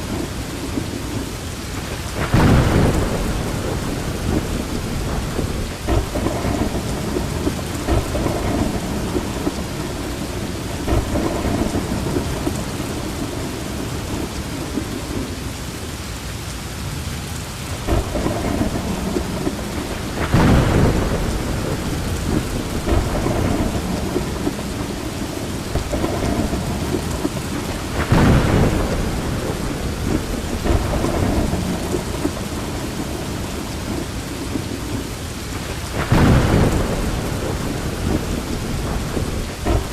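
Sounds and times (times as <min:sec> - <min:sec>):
low thunder rumbling: 0:00.0 - 0:15.8, 0:17.6 - 0:39.9
steady rain: 0:00.0 - 0:39.9.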